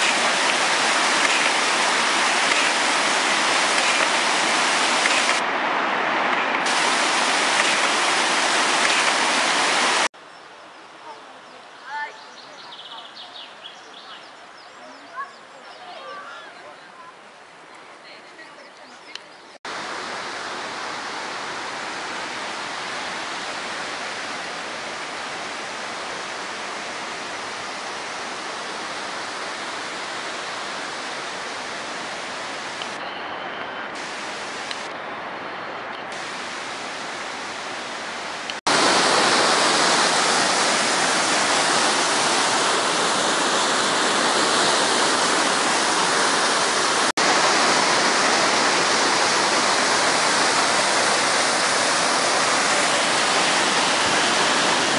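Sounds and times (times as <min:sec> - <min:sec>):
waterfall rushing: 0:00.0 - 0:10.1, 0:19.6 - 0:33.0, 0:34.0 - 0:34.9, 0:36.1 - 0:54.9.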